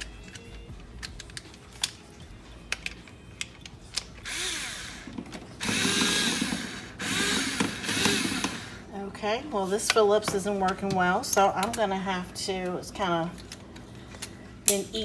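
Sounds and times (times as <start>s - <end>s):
battery screwdriver whirring: 2.6s - 8.9s.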